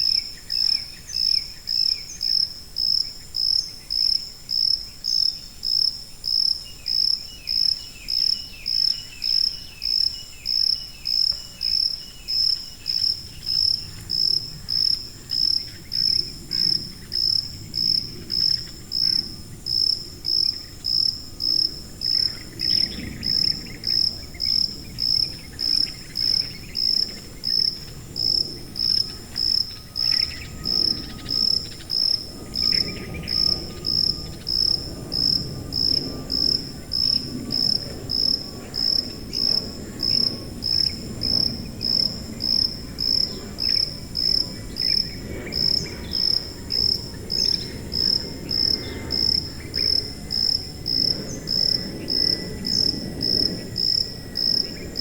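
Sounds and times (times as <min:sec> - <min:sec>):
cricket chirping: 0:00.0 - 0:55.0.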